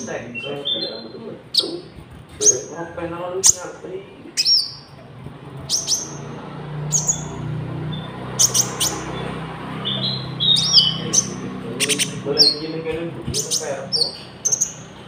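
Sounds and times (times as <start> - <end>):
songbird chirping and whistling: 0.0 - 2.7, 4.4 - 5.0, 5.7 - 12.7, 13.3 - 14.9.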